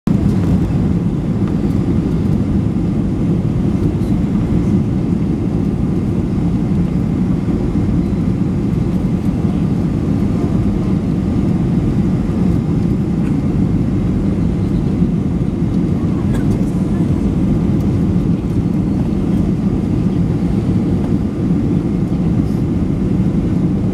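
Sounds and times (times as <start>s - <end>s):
airplane engine rumble: 0.1s - 23.9s.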